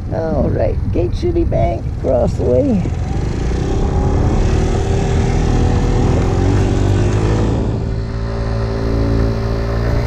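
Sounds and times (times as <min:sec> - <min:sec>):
scooter engine running: 0:00.0 - 0:10.0
wind and road rush: 0:00.0 - 0:10.0.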